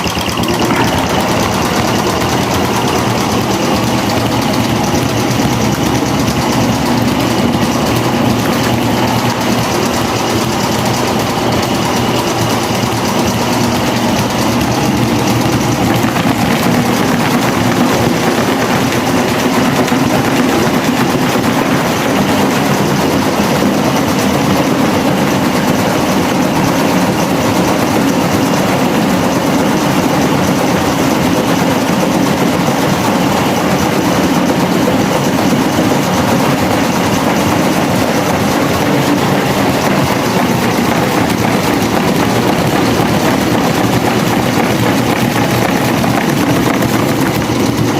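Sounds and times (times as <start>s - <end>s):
electric fan whirring: 0.0s - 47.9s.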